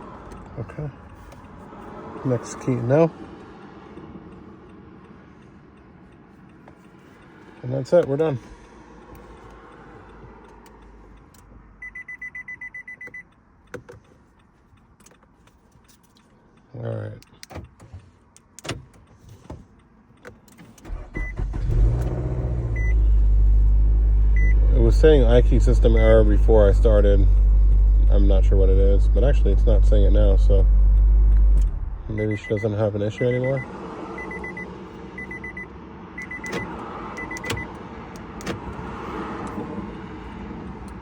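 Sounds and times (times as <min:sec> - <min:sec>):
car engine starting and idling: 0:00.0 - 0:41.0
car warning chime beeps: 0:09.2 - 0:13.4, 0:20.2 - 0:21.6, 0:22.7 - 0:23.2, 0:24.3 - 0:37.8
dashboard chime beeps: 0:32.1 - 0:36.6.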